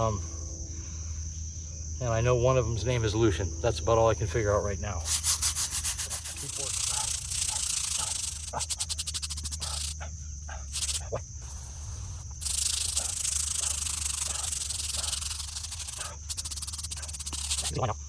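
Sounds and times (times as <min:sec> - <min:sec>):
brush scrubbing stone: 0:05.0 - 0:10.0, 0:10.7 - 0:17.8.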